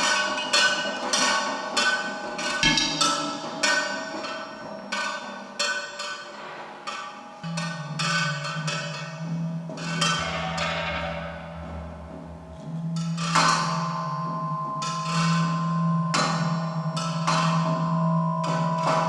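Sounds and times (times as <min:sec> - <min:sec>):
ringing percussion strikes: 0:00.0 - 0:19.0
low held tone: 0:09.2 - 0:17.0.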